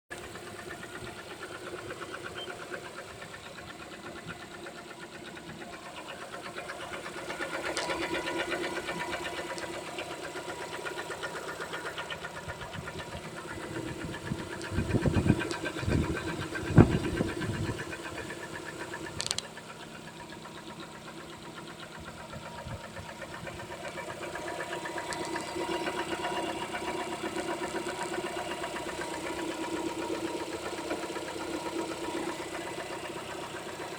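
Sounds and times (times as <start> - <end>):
car engine running: 0.1 - 33.9
engine knocking tick: 0.1 - 33.9
engine thumps: 6.9 - 19.7.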